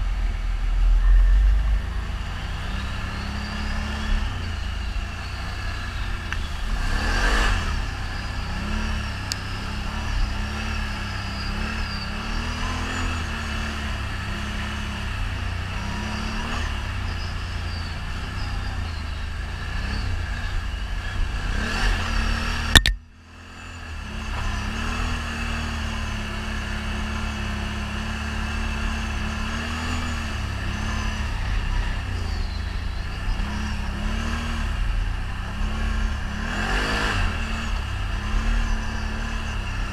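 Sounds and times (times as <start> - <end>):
atv engine revving: 0.0 - 39.9
sharp click: 22.7 - 23.0.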